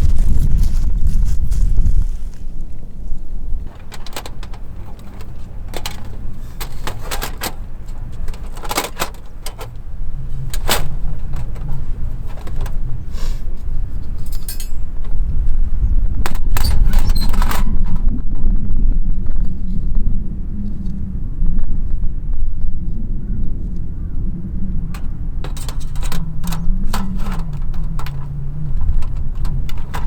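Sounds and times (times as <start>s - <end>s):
steady low rumble: 0.0s - 30.0s
sharp clicks knocks and clinks: 14.2s - 15.2s, 24.9s - 30.0s.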